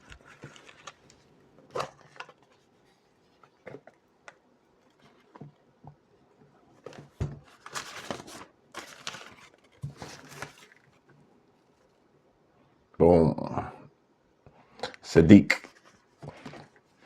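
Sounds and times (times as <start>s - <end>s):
packaging rustling: 0.0s - 4.0s, 6.8s - 12.0s.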